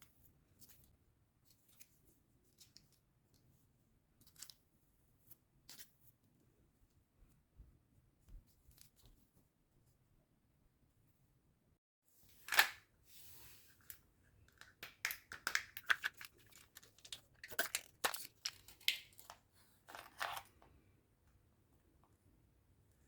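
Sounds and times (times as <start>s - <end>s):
packaging clicks and snaps: 14.5s - 20.5s.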